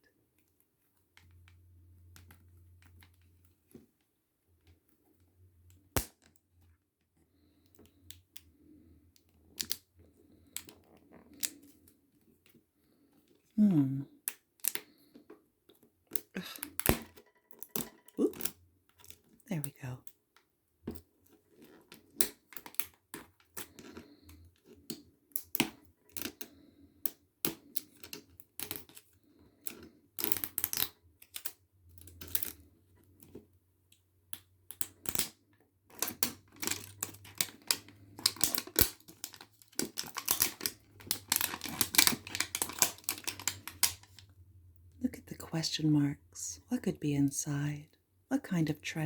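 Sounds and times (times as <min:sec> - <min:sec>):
toy packaging being opened: 0:35.9 - 0:44.3.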